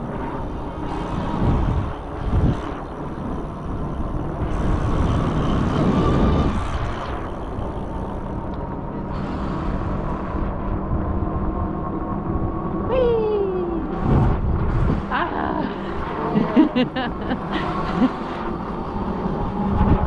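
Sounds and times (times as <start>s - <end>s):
electric motor whine: 0.0s - 12.8s
wind buffeting microphone: 0.0s - 20.0s.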